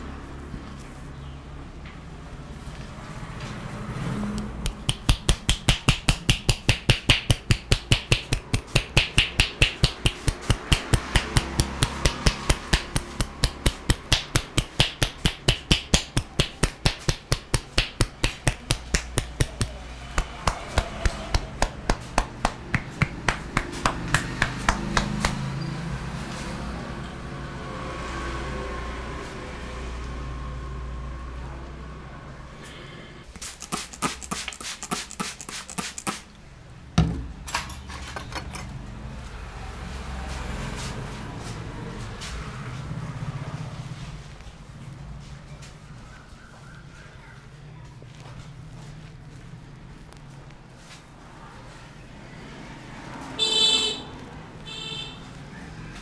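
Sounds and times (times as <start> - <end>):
hands tapping on body: 4.6 - 25.5.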